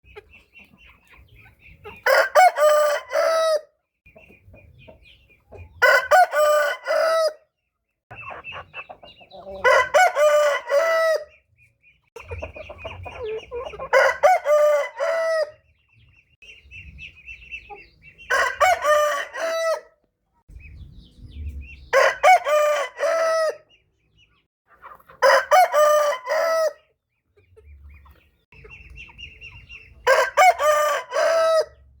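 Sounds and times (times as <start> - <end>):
high-pitched chicken calls: 0.1 - 3.7, 5.4 - 7.5, 8.1 - 11.5, 12.2 - 16.1, 16.8 - 20.1, 21.9 - 31.9
rooster crowing: 5.8 - 7.4, 9.6 - 11.3, 13.9 - 15.5, 18.3 - 19.9, 25.2 - 26.8, 30.1 - 31.8.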